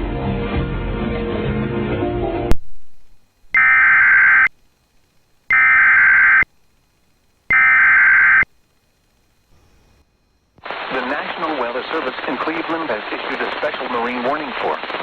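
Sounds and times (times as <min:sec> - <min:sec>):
music: 0:00.0 - 0:02.5
buzzing digital data tone: 0:03.5 - 0:04.6, 0:05.5 - 0:06.6, 0:07.5 - 0:08.8.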